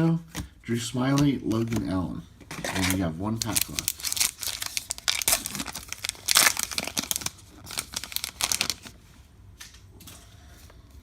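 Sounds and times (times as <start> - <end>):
wrapper tearing and crinkling: 2.6 - 9.0.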